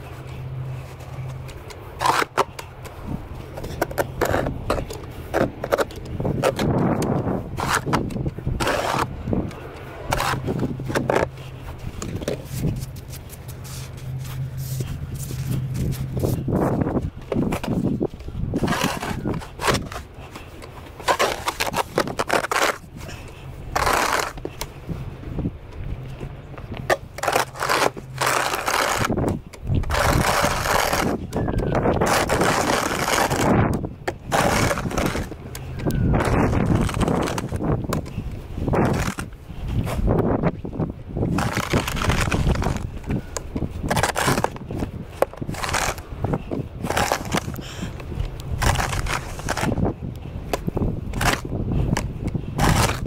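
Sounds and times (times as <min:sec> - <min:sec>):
steady low hum: 0:00.0 - 0:53.0
snow shovel scraping snow: 0:06.4 - 0:09.1, 0:09.9 - 0:16.9, 0:17.5 - 0:24.6, 0:27.2 - 0:29.2, 0:29.8 - 0:40.2, 0:41.3 - 0:43.2, 0:43.8 - 0:49.9, 0:51.2 - 0:53.0
snow shovel scraping through snow: 0:18.5 - 0:20.1, 0:21.0 - 0:24.4, 0:27.2 - 0:29.2, 0:29.8 - 0:33.7, 0:34.3 - 0:35.3, 0:41.3 - 0:43.0, 0:43.9 - 0:44.7, 0:45.4 - 0:47.9, 0:48.6 - 0:49.9, 0:52.5 - 0:53.0.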